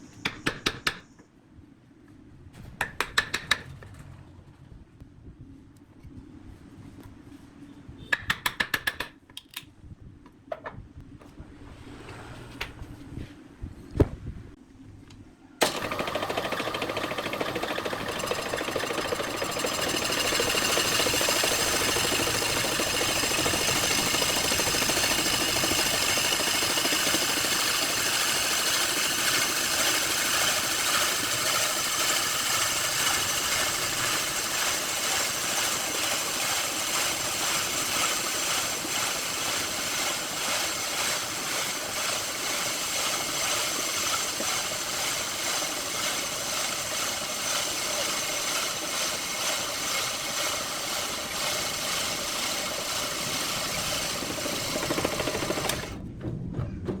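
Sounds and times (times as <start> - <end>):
woodworking machine hissing: 15.6 - 56.0.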